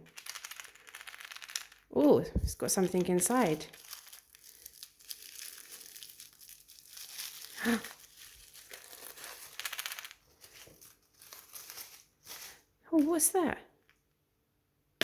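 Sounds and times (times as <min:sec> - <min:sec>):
plastic wrapping crinkling and tearing: 0:00.0 - 0:01.8, 0:02.5 - 0:12.7.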